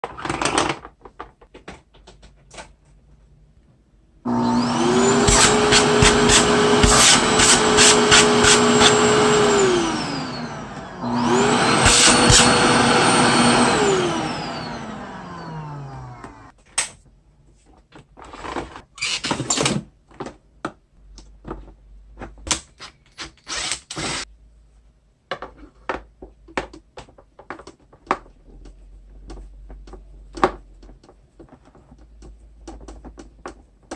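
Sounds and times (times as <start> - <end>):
vacuum cleaner motor whine: 4.3 - 16.5.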